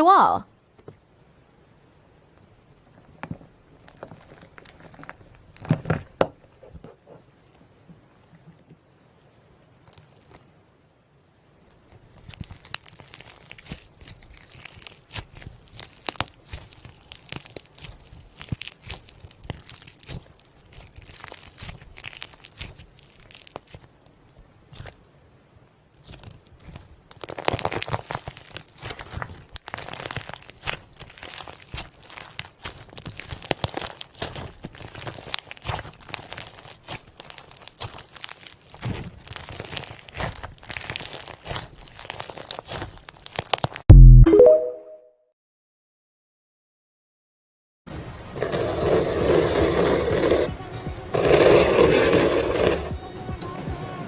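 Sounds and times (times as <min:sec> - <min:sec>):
slime crackling and popping: 0:03.8 - 0:06.2, 0:09.8 - 0:10.4, 0:11.9 - 0:25.1, 0:25.9 - 0:44.2.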